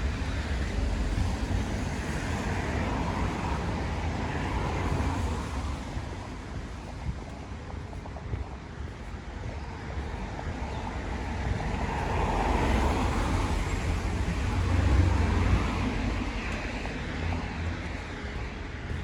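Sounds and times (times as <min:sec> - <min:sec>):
vehicle tyres hissing on wet road: 0:00.0 - 0:06.8, 0:11.6 - 0:17.6.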